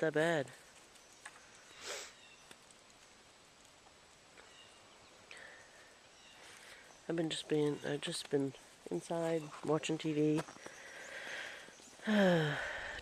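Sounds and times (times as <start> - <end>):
faint bird calls: 0.9 - 2.6, 4.4 - 8.7, 10.4 - 13.0.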